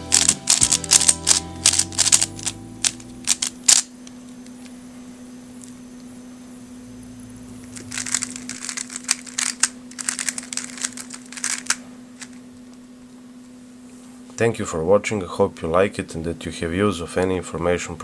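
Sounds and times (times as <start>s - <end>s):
plastic cube layers clicking: 0.0s - 3.9s, 7.7s - 12.3s.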